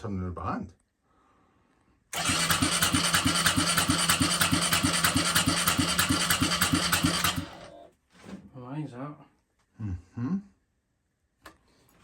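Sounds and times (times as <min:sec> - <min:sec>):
motorcycle engine cranking: 0:02.2 - 0:07.8.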